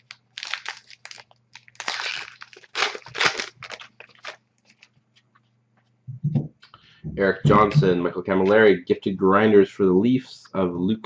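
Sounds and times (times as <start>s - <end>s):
trading cards rustling: 0.0s - 5.0s.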